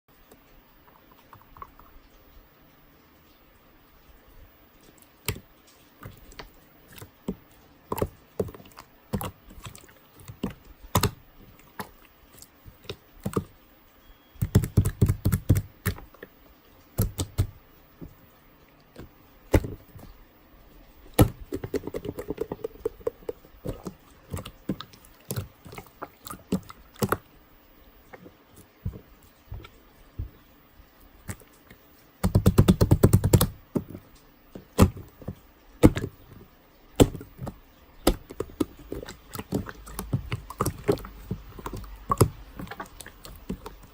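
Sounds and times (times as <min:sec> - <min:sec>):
hands squeezing slime clicking: 0:05.2 - 0:13.5, 0:17.0 - 0:17.6, 0:37.0 - 0:43.9.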